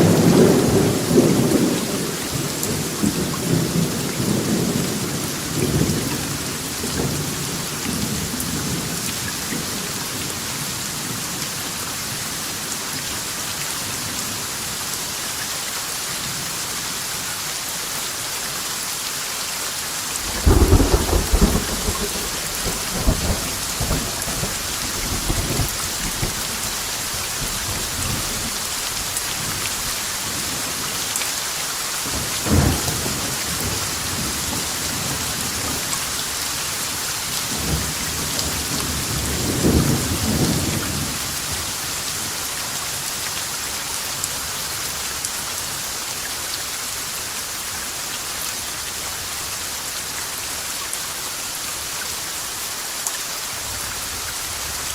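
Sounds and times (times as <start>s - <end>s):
steady rain: 0.0s - 54.9s
loud thunderclap: 20.2s - 26.7s, 32.1s - 35.2s
rolling thunder rumble: 20.2s - 29.6s.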